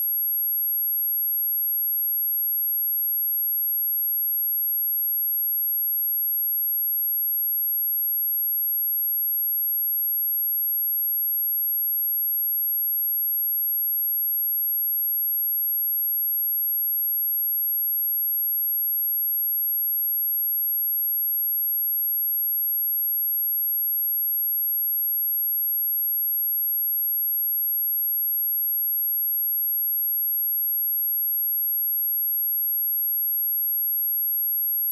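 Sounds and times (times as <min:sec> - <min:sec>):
high-pitched sine test tone: 0:21.7 - 0:34.9.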